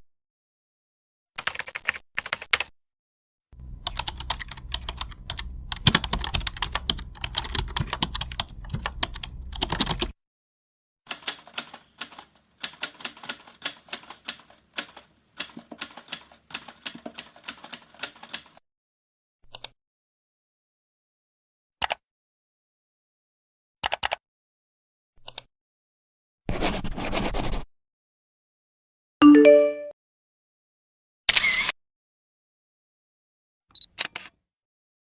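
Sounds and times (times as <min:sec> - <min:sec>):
computer keyboard typing: 0:01.4 - 0:02.7, 0:03.6 - 0:10.2, 0:11.1 - 0:18.6
low hum: 0:03.6 - 0:09.8.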